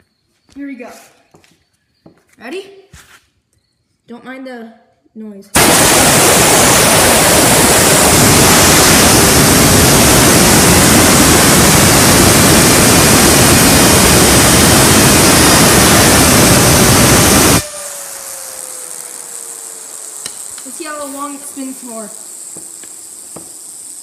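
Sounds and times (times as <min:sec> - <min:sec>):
fidget spinner whirring: 0:13.0 - 0:24.0
compressed air hissing: 0:18.4 - 0:24.0.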